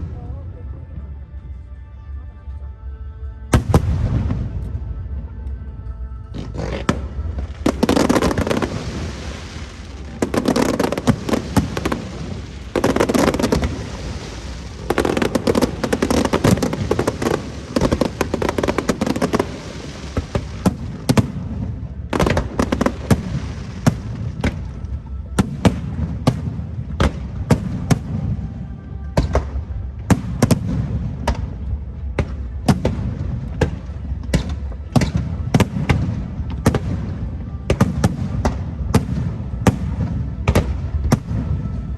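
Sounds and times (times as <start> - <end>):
fireworks bursts: 6.4 - 28.6.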